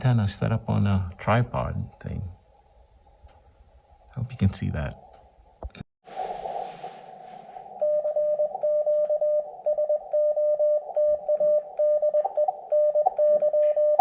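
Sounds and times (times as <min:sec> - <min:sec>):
morse code beeps: 0:07.8 - 0:14.0.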